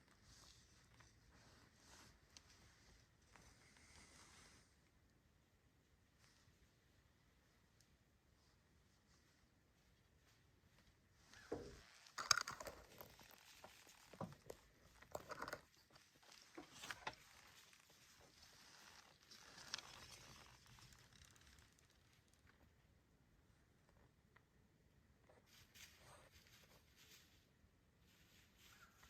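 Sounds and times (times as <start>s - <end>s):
soft rustling and crunching: 0.0s - 5.0s, 6.1s - 22.8s, 25.2s - 29.0s
sharp crackle: 15.4s - 22.5s.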